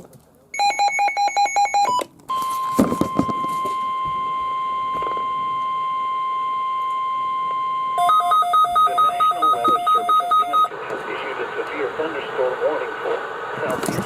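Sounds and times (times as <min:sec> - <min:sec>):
quick beeps: 0:00.6 - 0:10.7
steady warning alarm tone: 0:00.6 - 0:10.7.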